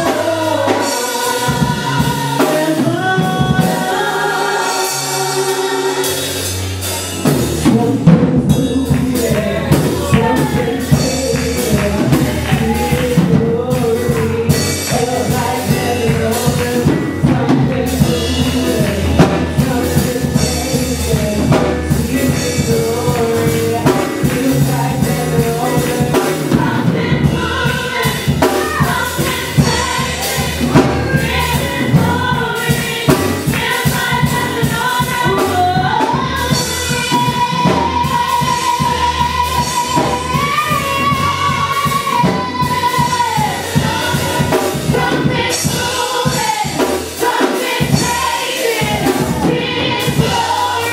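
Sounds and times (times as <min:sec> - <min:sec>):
gospel choir singing with band: 0:00.0 - 0:50.9
steady drum beat: 0:00.0 - 0:50.9.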